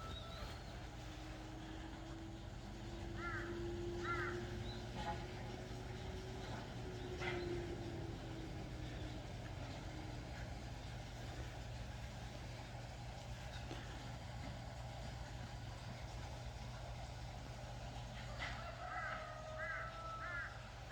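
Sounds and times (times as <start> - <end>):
bird calls: 0.0 - 0.8
steady low hum: 0.0 - 18.5.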